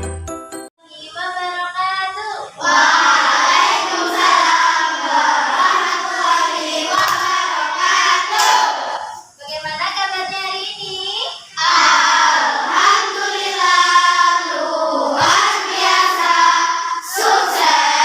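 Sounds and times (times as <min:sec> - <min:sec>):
chime jingle: 0:00.0 - 0:00.7
children singing in unison: 0:02.5 - 0:09.3, 0:11.5 - 0:18.0.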